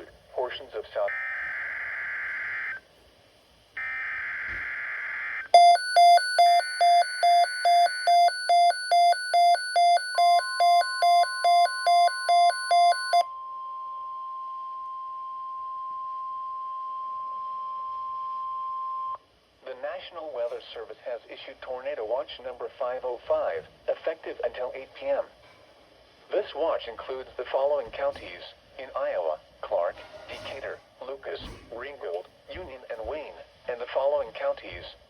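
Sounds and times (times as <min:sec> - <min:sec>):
steady alarm tone: 0:03.8 - 0:13.3
electronic alarm beeping: 0:05.6 - 0:13.3.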